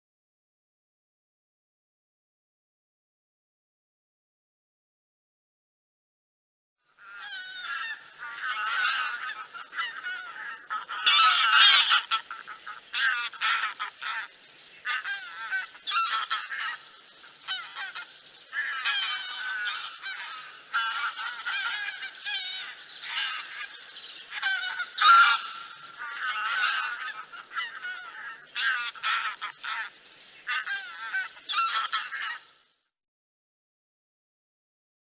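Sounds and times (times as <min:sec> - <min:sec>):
geese honking: 0:07.0 - 0:32.5.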